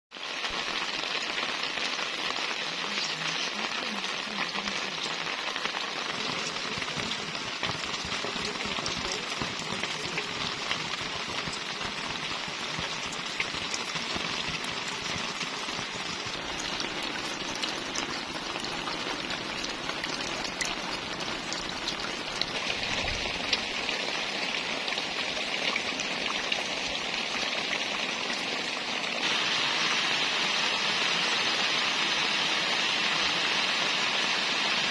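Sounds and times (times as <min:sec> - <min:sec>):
rain falling: 0:00.1 - 0:34.9
raindrops ticking: 0:00.2 - 0:29.4.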